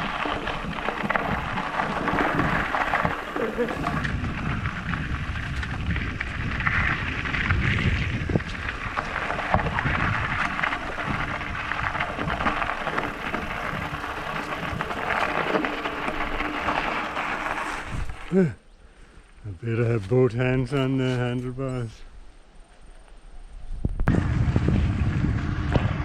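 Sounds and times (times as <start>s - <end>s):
wind buffeting microphone: 0.0s - 18.4s, 23.6s - 26.0s.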